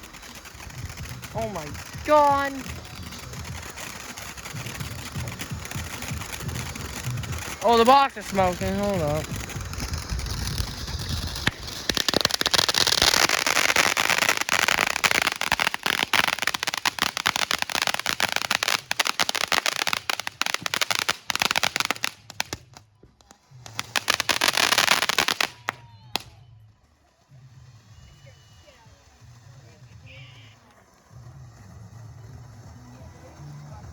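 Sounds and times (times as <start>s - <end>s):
fireworks cracking and popping: 0.0s - 33.9s.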